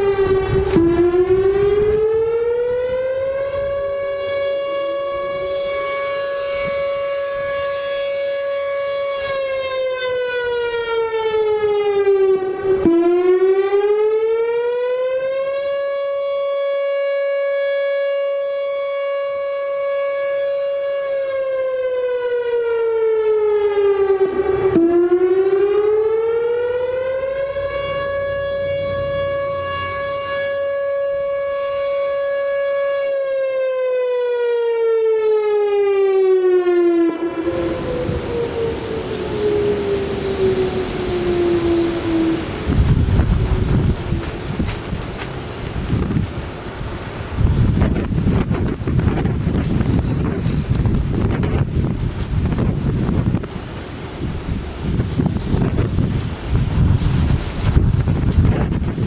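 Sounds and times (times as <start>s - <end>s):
tornado siren rising and falling: 0.0s - 59.0s.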